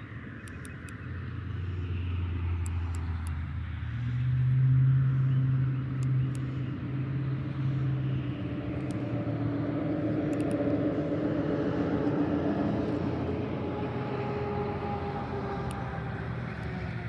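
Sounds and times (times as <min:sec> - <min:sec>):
low engine hum: 0:00.0 - 0:17.0
faint high ticks: 0:00.4 - 0:01.0, 0:02.6 - 0:03.5, 0:06.0 - 0:06.6, 0:08.8 - 0:09.2, 0:10.2 - 0:10.8, 0:15.6 - 0:15.9.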